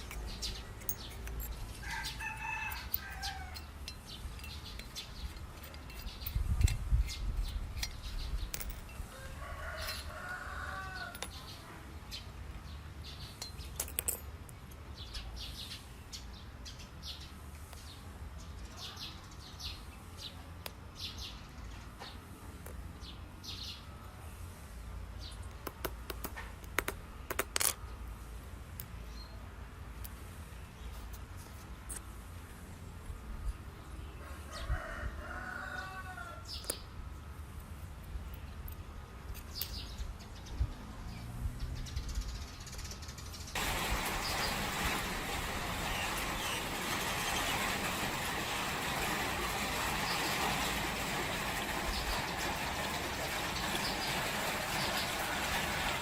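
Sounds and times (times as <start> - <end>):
chickens calling: 43.6 - 56.0.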